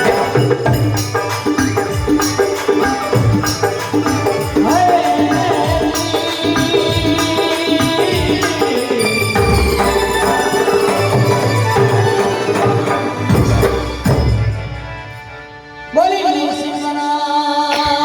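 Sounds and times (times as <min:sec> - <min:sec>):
drum and jingle percussion: 0:00.0 - 0:15.2
folk melody: 0:07.9 - 0:17.1.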